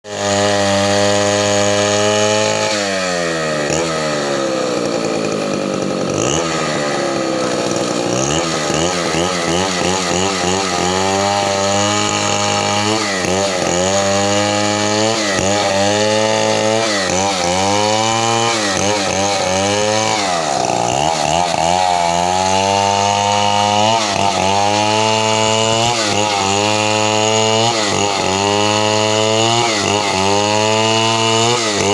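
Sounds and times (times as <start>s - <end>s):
chainsaw cutting wood: 0.0s - 31.9s.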